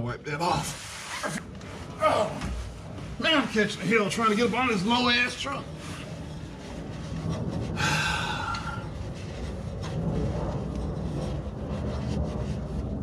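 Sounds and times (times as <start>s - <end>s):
steady low hum: 0.0s - 13.0s
man breathing hard: 7.7s - 9.2s.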